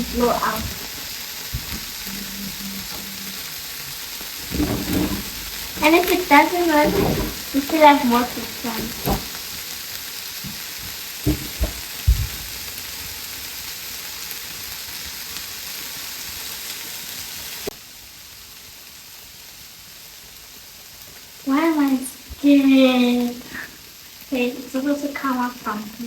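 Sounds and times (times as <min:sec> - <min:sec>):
food sizzling in hot oil: 0:00.0 - 0:26.0
soft knocks: 0:11.3 - 0:12.4.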